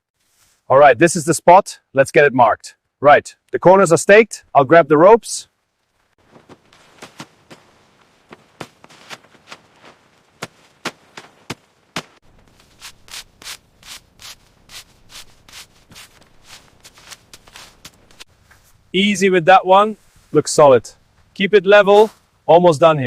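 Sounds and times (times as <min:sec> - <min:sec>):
tools scraping dirt: 0:06.2 - 0:18.8.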